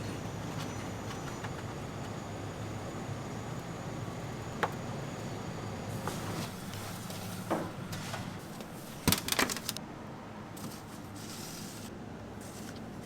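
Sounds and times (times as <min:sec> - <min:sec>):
low machine hum: 0:00.0 - 0:10.4.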